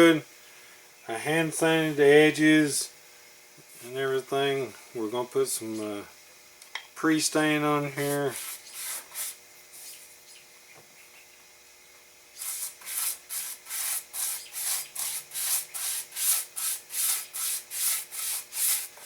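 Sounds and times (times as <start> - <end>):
applicator rubbing on wood: 8.0 - 10.1, 12.4 - 19.0.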